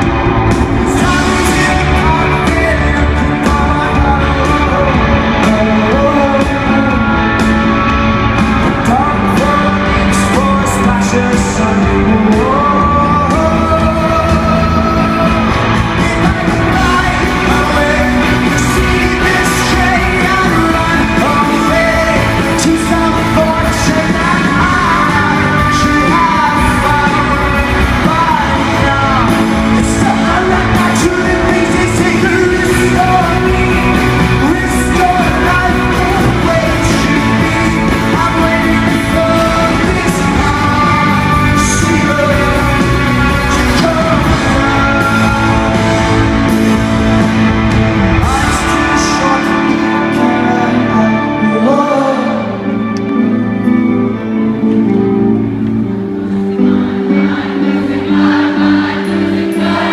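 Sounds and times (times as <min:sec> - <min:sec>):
rock band playing live: 0:00.0 - 0:59.9
singer singing: 0:00.0 - 0:59.9.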